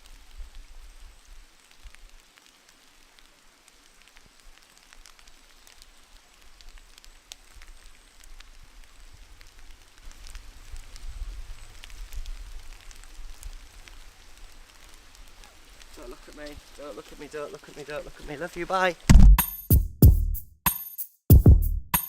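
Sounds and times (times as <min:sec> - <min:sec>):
faint ticks and crackles: 0:00.0 - 0:19.0
wind rumble on microphone: 0:08.4 - 0:15.8.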